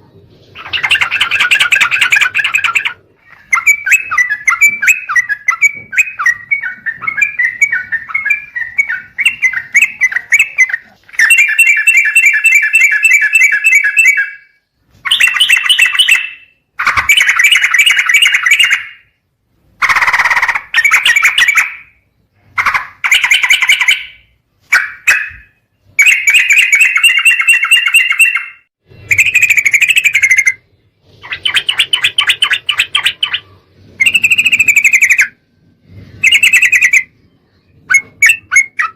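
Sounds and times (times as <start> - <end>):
bird chattering call: 0.6 - 14.3.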